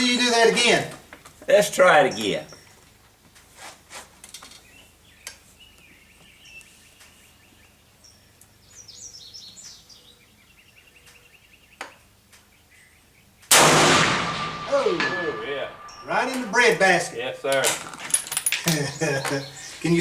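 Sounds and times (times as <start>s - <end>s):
faint bird chirps: 4.5s - 13.4s, 18.8s - 20.0s
short falling bird calls: 18.8s - 20.0s.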